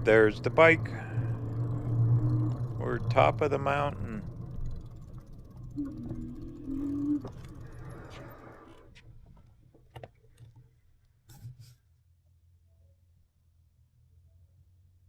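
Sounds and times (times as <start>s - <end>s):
electric bike motor whine: 0.0s - 8.9s
bike rolling noise: 0.0s - 9.5s.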